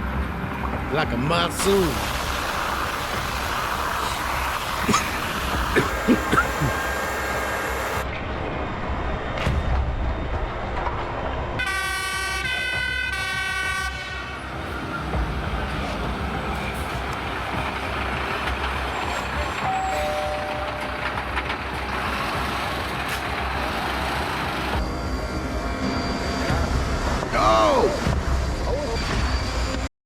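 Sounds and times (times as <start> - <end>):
fire engines rumbling: 0.0 - 29.9
fire engine siren: 11.6 - 15.0.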